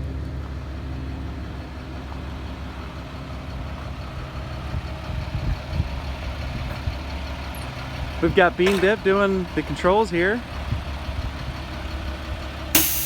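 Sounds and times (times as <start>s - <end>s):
diesel truck engine idling: 0.0s - 13.0s.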